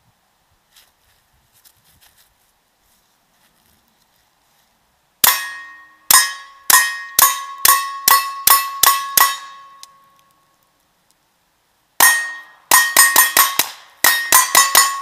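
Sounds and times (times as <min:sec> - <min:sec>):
metallic ringing: 0:05.2 - 0:10.2, 0:12.0 - 0:15.0.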